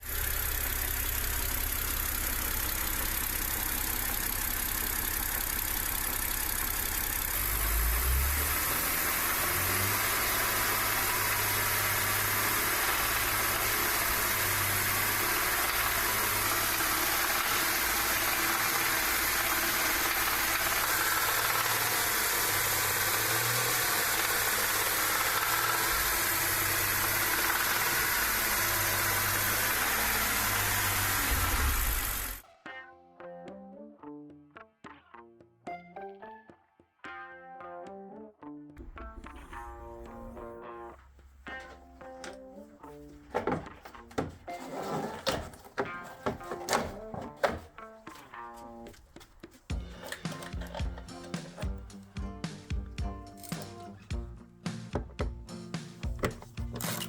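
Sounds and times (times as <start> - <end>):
car engine running: 0.0 - 32.4, 38.8 - 57.0
engine bearing knock: 41.0 - 44.5, 54.8 - 56.9.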